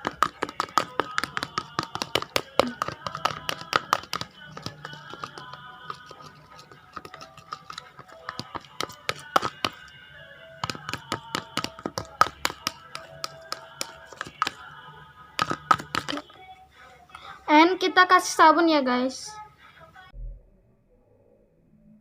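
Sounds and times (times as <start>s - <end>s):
spoon tapping small container: 0.0s - 14.7s, 15.4s - 16.2s
faint background music: 0.0s - 22.0s.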